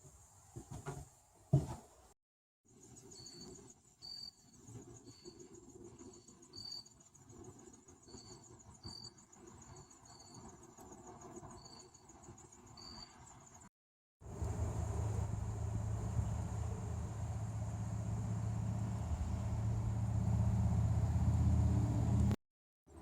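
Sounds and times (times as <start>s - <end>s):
insect chirps: 2.7s - 13.7s
faint low rumble: 14.3s - 22.4s.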